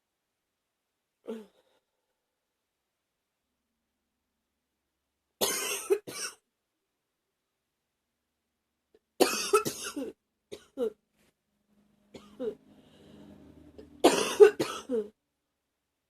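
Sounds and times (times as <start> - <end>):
woman coughing: 5.4 - 6.4, 9.2 - 11.0, 14.0 - 15.1.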